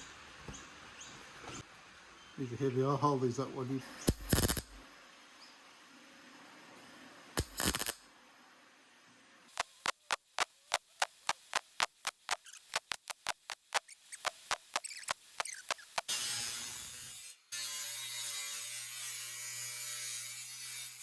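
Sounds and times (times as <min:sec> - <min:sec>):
hand ratchet clicking: 0:04.1 - 0:04.8, 0:07.4 - 0:08.0, 0:09.6 - 0:16.1.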